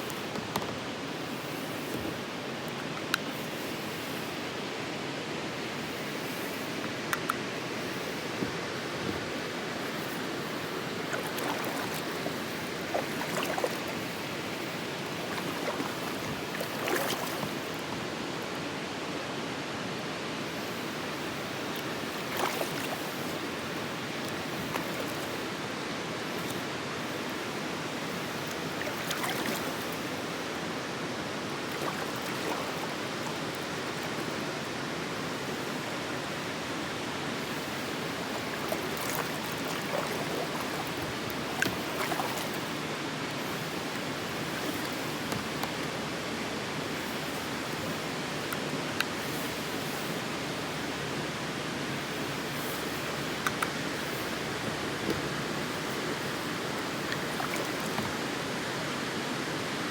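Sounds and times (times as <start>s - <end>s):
sharp water splashes: 11.0s - 17.7s, 37.5s - 46.1s.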